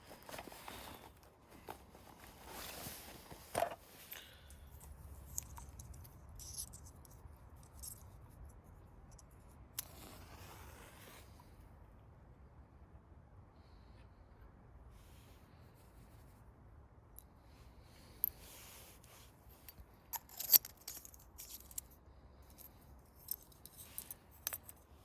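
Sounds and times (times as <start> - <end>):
rustling and scraping: 0.0 - 11.5, 17.8 - 25.0.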